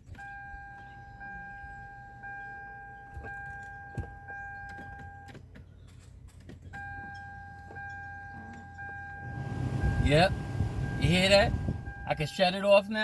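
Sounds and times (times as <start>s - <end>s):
car warning chime beeping: 0.0s - 5.4s, 6.7s - 13.0s
steady low hum: 9.2s - 12.2s.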